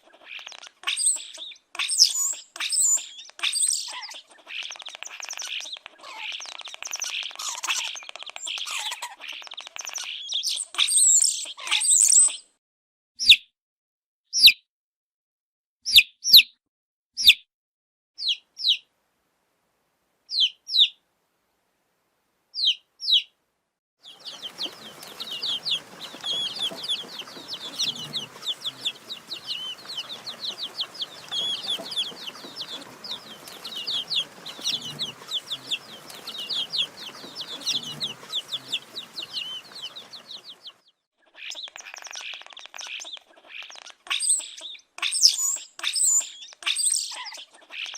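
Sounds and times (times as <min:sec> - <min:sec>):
baby chicks peeping: 0:00.0 - 0:12.4, 0:18.2 - 0:18.9, 0:20.3 - 0:21.0, 0:22.6 - 0:23.3, 0:24.0 - 0:47.9.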